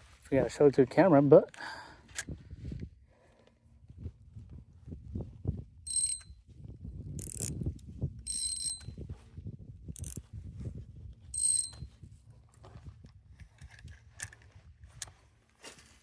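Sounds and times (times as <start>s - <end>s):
fishing reel whirring: 5.9s - 6.2s, 7.2s - 7.6s, 8.3s - 8.9s, 10.0s - 10.2s, 11.4s - 11.8s.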